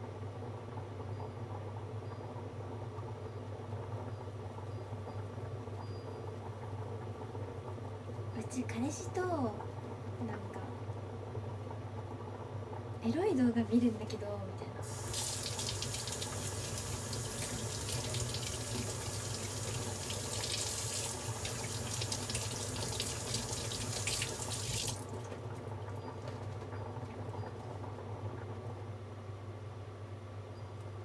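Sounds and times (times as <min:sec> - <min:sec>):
tap running into sink: 0:14.8 - 0:25.4.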